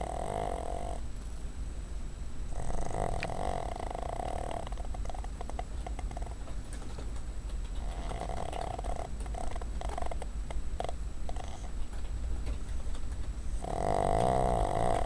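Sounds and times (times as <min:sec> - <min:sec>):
dog snoring: 0:00.0 - 0:01.0, 0:02.5 - 0:06.5, 0:07.7 - 0:11.9, 0:13.5 - 0:15.0
dog snuffling breaths: 0:02.5 - 0:06.5, 0:07.8 - 0:15.0.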